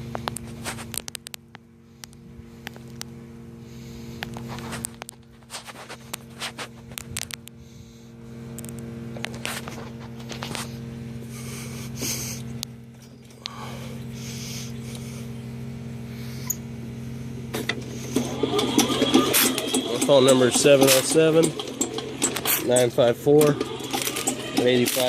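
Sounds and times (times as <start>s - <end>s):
drain cleaning machine motor hum: 7.8s - 25.0s
cable clattering and scraping: 17.6s - 25.0s.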